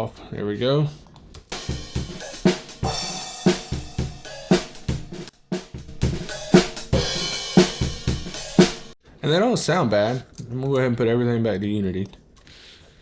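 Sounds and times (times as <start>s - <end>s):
drum kit groove: 1.5s - 9.0s.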